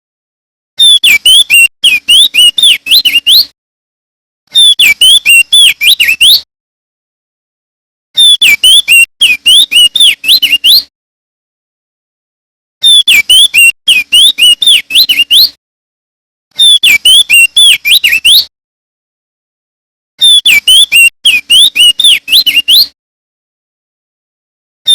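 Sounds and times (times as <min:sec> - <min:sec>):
bird singing whistled phrases: 0:00.8 - 0:03.5, 0:04.5 - 0:06.5, 0:08.2 - 0:10.9, 0:12.8 - 0:15.6, 0:16.6 - 0:18.5, 0:20.2 - 0:23.0.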